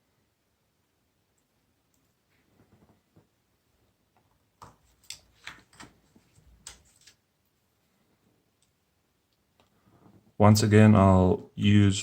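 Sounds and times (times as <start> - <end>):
pliers clicking on wire: 4.6 - 5.8.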